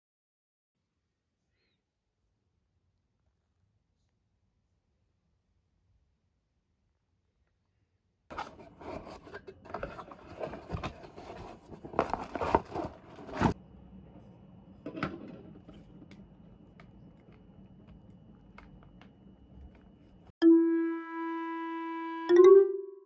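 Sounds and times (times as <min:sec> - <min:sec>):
small objects rustling and clicking: 0:08.3 - 0:13.6.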